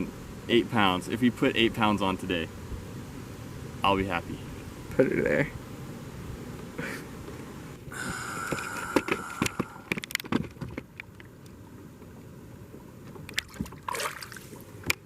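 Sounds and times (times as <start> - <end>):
steady whine: 0.0 - 13.4
clicks and knocks against kayak: 8.4 - 11.4.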